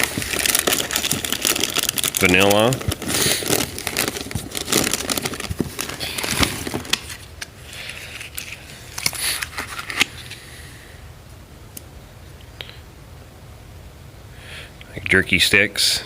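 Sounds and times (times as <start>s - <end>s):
plastic wrappers crinkling: 0.0s - 10.4s.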